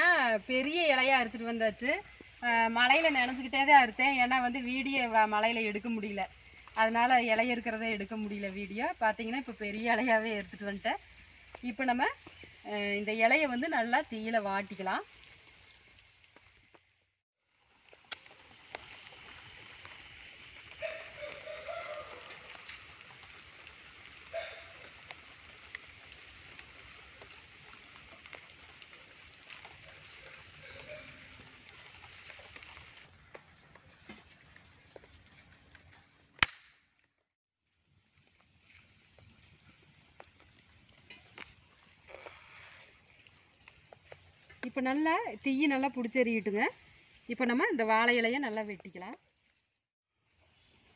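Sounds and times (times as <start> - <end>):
wood fire crackling and popping: 15.1 - 17.0, 17.6 - 36.8, 39.1 - 42.3, 43.1 - 44.7
crickets chirping: 17.4 - 50.9
sharp crack: 36.4 - 36.8.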